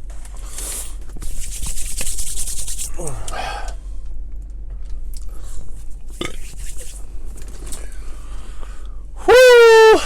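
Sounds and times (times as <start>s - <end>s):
rustling and rubbing: 0.6s - 3.0s, 5.8s - 7.6s
short falling vocal sound: 9.3s - 10.0s.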